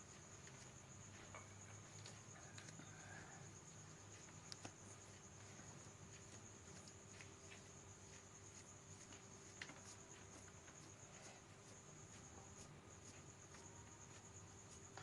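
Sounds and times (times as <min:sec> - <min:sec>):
faint ticks: 0:00.1 - 0:07.8.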